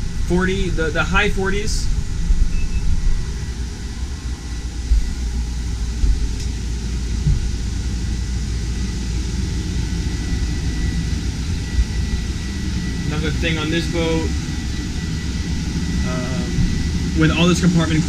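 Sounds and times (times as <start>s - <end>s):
air conditioner blower rushing: 0.0s - 18.0s
dull low knocks: 7.2s - 7.6s.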